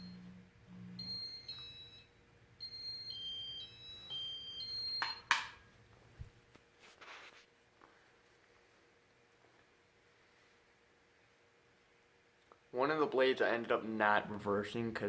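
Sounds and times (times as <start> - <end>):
electronic beeps: 0.0 - 5.3.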